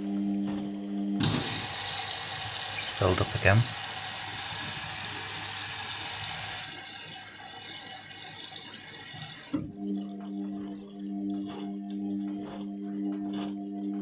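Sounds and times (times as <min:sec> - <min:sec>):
washing machine low hum: 0:00.0 - 0:14.0
water rushing into washing machine: 0:01.2 - 0:09.8.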